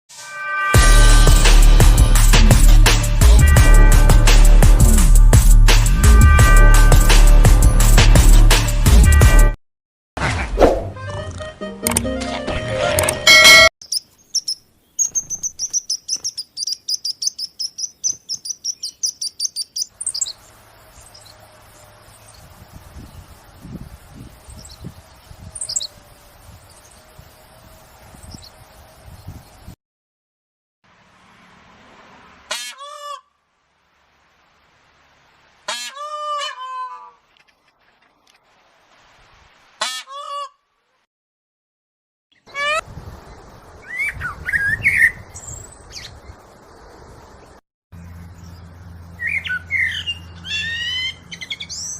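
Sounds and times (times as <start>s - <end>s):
music: 0.1s - 9.6s, 10.9s - 13.6s
bird chirping: 13.8s - 29.6s, 43.3s - 51.9s
faint steady hiss: 33.5s - 35.7s, 37.7s - 39.8s
harsh bird calls: 42.3s - 51.9s.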